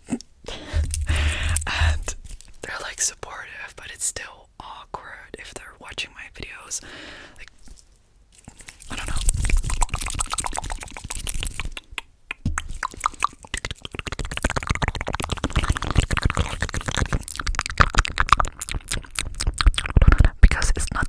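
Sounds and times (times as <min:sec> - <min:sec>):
lip smacks: 0:00.0 - 0:02.5, 0:08.5 - 0:21.0
tongue clicks: 0:00.1 - 0:02.2, 0:09.0 - 0:21.0.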